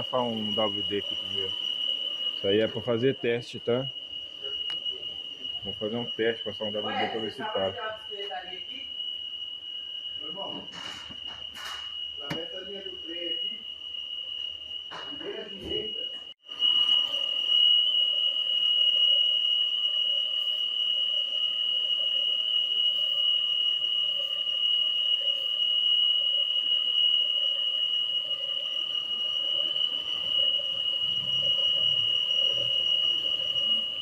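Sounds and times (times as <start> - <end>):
engine running with high-pitched whine: 29.0 - 34.0.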